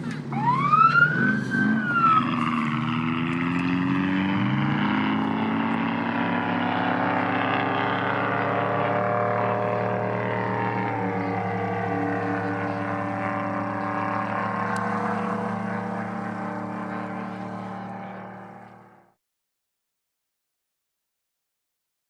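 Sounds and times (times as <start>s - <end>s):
race engine running: 0.0s - 19.2s
siren-like whoop: 0.3s - 3.2s, 9.2s - 18.0s.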